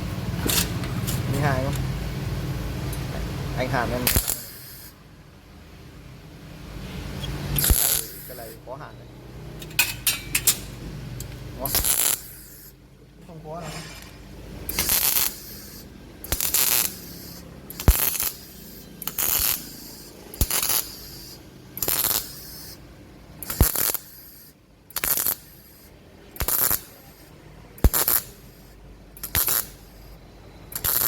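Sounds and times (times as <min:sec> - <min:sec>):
welder sharp click: 0:04.0 - 0:04.9, 0:07.2 - 0:08.6, 0:09.6 - 0:12.7, 0:14.7 - 0:22.8, 0:23.4 - 0:24.2, 0:24.9 - 0:27.0, 0:27.8 - 0:28.4, 0:29.2 - 0:29.8, 0:30.7 - 0:31.0
welding arc crackle: 0:04.1 - 0:05.0, 0:07.5 - 0:08.6, 0:11.6 - 0:12.8, 0:13.8 - 0:22.8, 0:23.4 - 0:30.1, 0:30.7 - 0:31.0.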